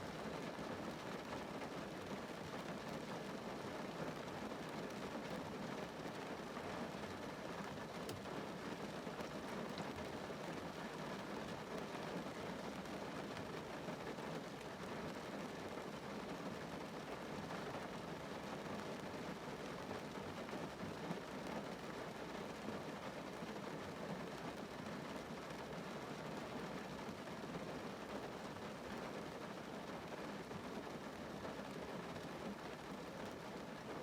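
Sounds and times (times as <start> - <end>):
rain on a car roof: 0.0 - 34.0.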